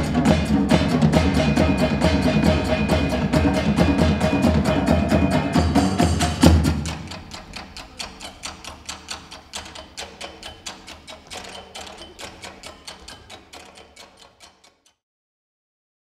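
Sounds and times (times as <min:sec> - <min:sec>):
soundtrack music: 0:00.0 - 0:08.5
fast light percussive ticks: 0:00.0 - 0:15.0.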